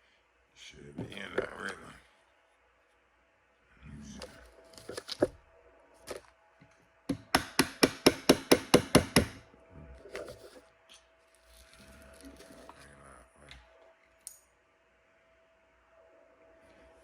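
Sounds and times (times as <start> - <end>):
pin punch tapping: 7.1 - 9.4.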